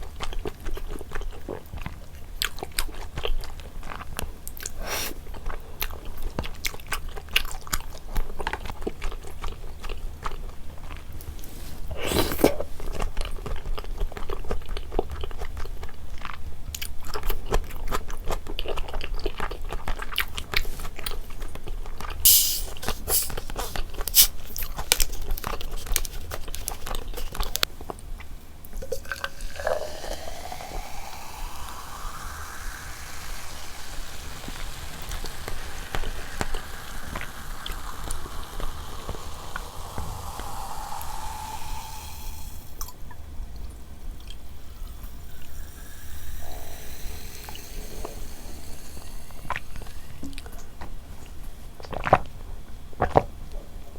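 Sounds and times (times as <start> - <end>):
chewing with wet mouth clicks: 12.4 - 22.2, 50.2 - 52.4
rising tone: 29.8 - 42.8.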